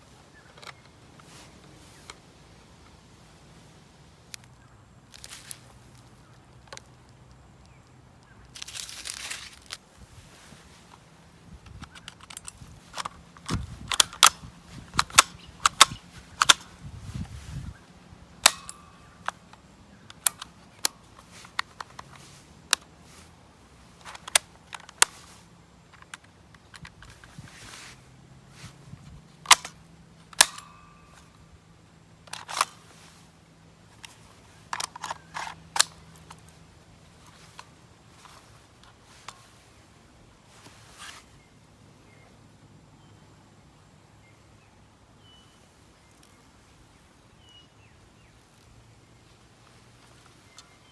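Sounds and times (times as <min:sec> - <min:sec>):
toy pistol clicks and snaps: 0:11.8 - 0:16.8, 0:18.4 - 0:22.9, 0:24.0 - 0:25.3, 0:29.5 - 0:30.9, 0:32.3 - 0:32.8, 0:34.7 - 0:36.5.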